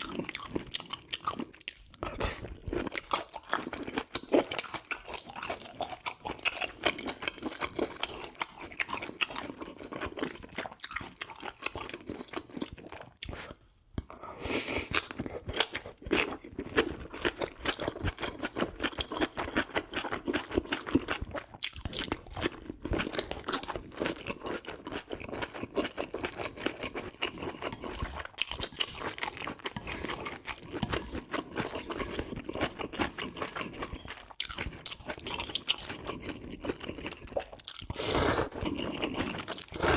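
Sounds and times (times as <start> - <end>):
chewing and crunching food: 0.0 - 39.9.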